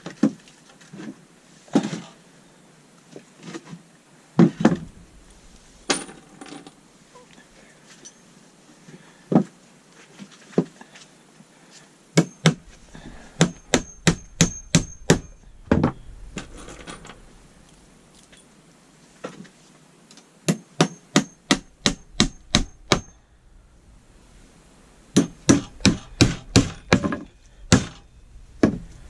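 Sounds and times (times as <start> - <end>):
hammer striking nails into wood: 12.2 - 12.6, 13.4 - 16.0, 20.5 - 23.2, 25.2 - 28.0.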